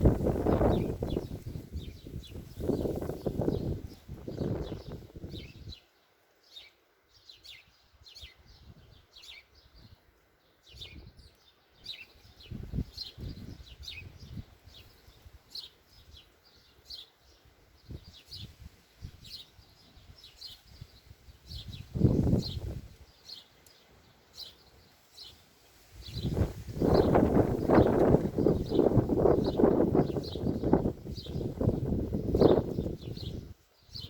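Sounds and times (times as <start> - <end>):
wind buffeting microphone: 0.0 - 5.8, 8.1 - 10.0, 10.7 - 11.3, 12.2 - 16.3, 17.8 - 23.0, 26.0 - 34.0
small birds chirping: 0.0 - 34.0.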